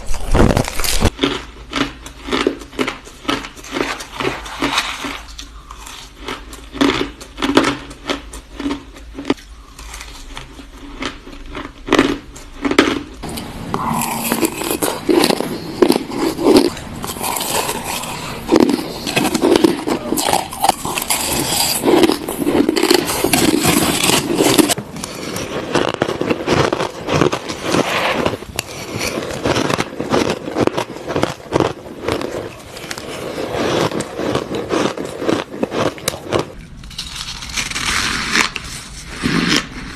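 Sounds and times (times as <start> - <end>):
crushed ice crunching: 11.5 - 39.9.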